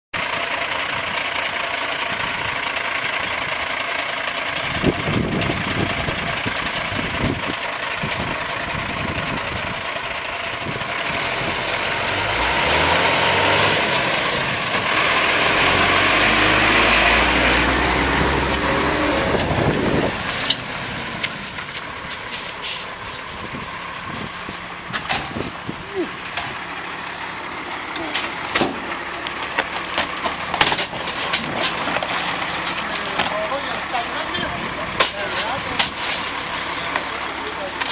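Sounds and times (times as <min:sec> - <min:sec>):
diesel engine revving: 0:00.2 - 0:37.9
knocks and clatter: 0:28.1 - 0:33.4.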